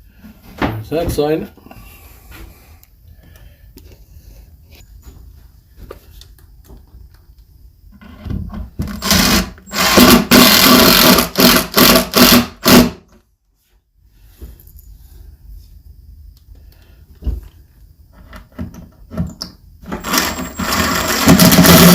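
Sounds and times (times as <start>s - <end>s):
cordless drill driving screws: 8.9s - 12.9s, 19.9s - 21.9s.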